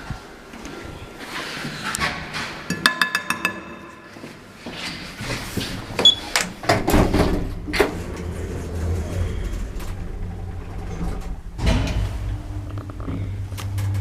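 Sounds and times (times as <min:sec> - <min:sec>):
lift doors sliding and clunking: 0:04.7 - 0:14.0
lift running low hum: 0:06.8 - 0:14.0.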